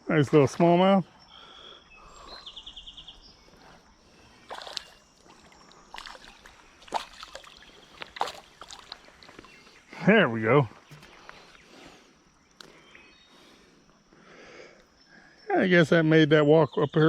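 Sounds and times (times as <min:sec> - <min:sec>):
faint creek water: 0:00.0 - 0:17.0.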